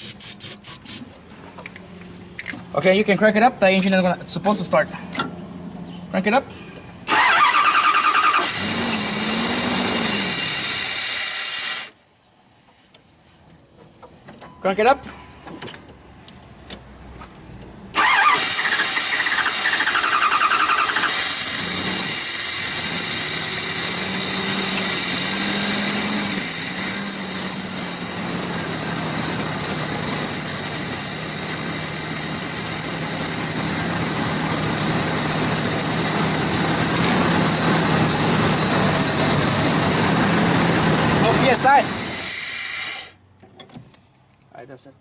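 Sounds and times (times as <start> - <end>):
car engine starting and running: 7.0 - 12.0, 15.7 - 42.3.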